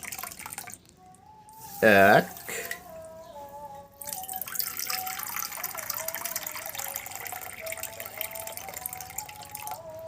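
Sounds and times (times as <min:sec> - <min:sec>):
water pouring into a pot: 0:00.0 - 0:01.0, 0:04.0 - 0:10.0.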